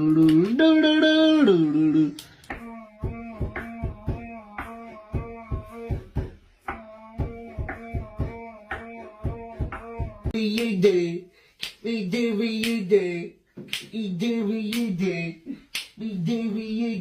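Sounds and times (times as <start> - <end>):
person humming: 0.0 - 11.2
rhythmic thumping beat: 0.0 - 13.0, 13.6 - 15.2.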